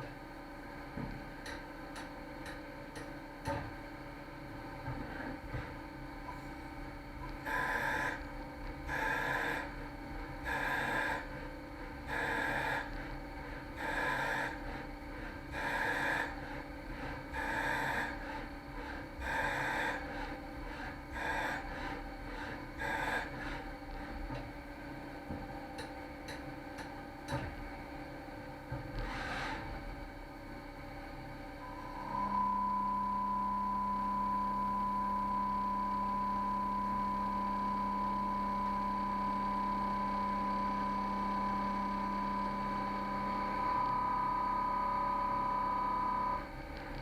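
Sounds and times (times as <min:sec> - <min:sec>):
steady machine hum: 0:00.0 - 0:47.0
lathe rasping machining noise: 0:07.2 - 0:24.4.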